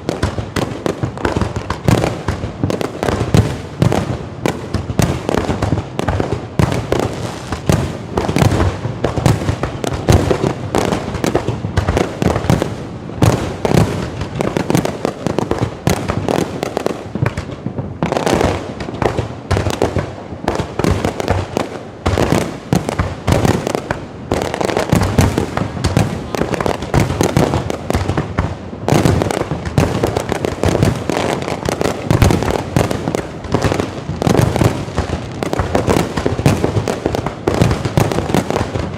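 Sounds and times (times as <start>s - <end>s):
fireworks bangs: 0.0s - 38.9s.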